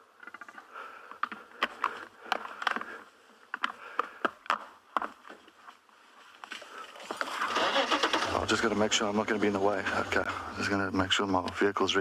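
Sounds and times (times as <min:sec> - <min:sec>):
buffalo horns clacking together: 0:00.0 - 0:05.8.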